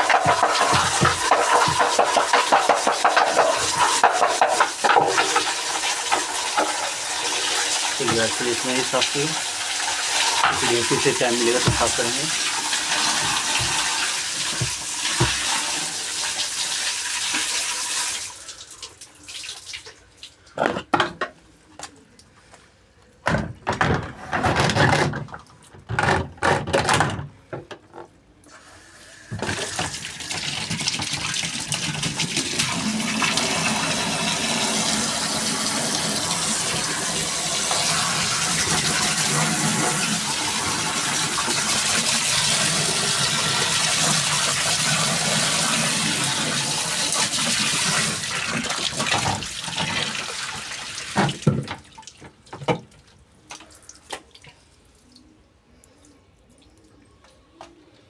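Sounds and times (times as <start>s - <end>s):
knocks and splashes: 0.0s - 6.8s, 10.3s - 15.6s, 47.6s - 54.6s
water running from a tap: 0.0s - 20.0s, 29.0s - 52.2s.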